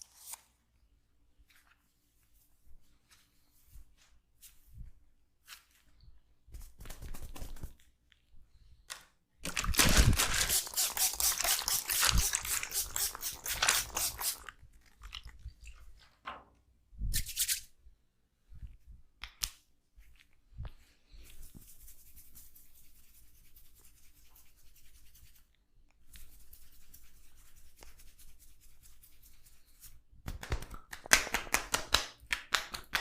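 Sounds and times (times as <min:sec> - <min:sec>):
hands rubbing hair and scalp: 0:01.4 - 0:07.8, 0:10.1 - 0:14.5, 0:20.0 - 0:31.6.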